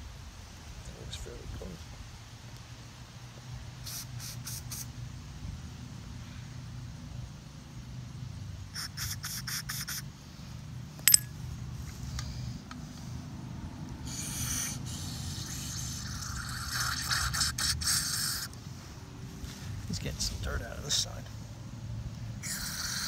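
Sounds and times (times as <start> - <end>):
scraping on metal part: 11.0 - 11.3
sharp metal clink: 11.0 - 11.4.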